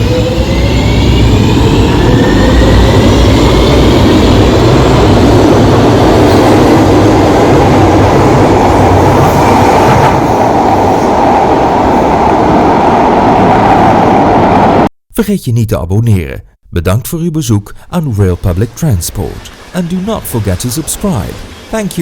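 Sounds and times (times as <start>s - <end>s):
electric train motor whine: 0.0s - 14.8s
train rolling on track: 0.0s - 14.9s, 18.1s - 22.0s.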